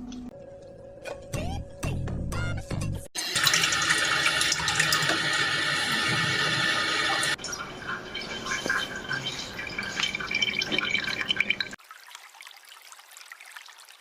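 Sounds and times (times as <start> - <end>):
water running: 3.2 - 14.0
water splashing or dripping: 3.2 - 14.0.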